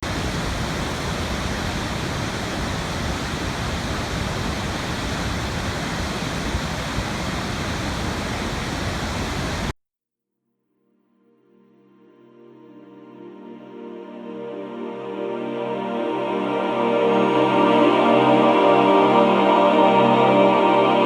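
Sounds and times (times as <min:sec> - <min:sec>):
steady rushing noise: 0:00.0 - 0:09.7.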